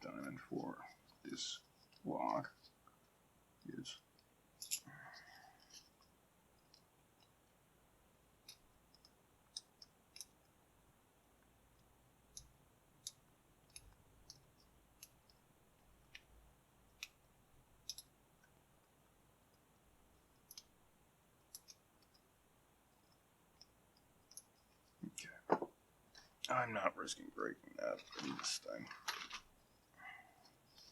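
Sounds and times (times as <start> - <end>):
lock pick clicks: 21.5 - 22.2.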